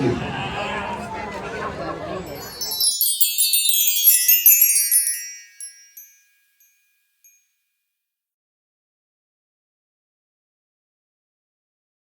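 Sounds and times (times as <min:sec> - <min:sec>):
tinkling chimes cascading downward: 0:02.3 - 0:07.4.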